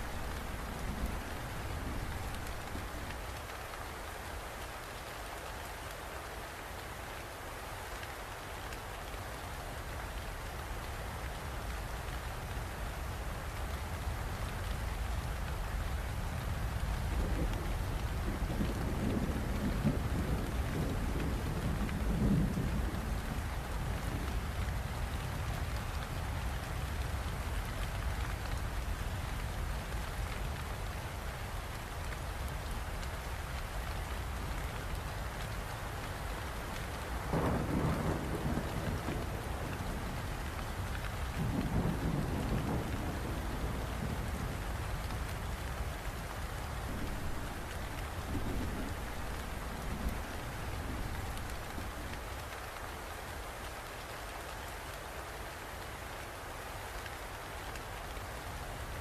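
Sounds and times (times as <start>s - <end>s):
low rolls of thunder: 0.0s - 3.3s, 16.3s - 26.1s, 36.8s - 52.5s
rain falling: 0.0s - 59.0s.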